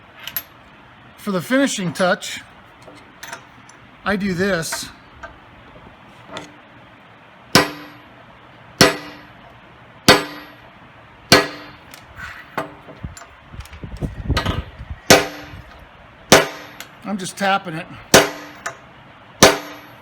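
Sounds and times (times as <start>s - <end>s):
hammer blows on metal: 10.1s - 10.6s, 11.3s - 12.8s, 14.4s - 15.7s, 18.1s - 18.8s.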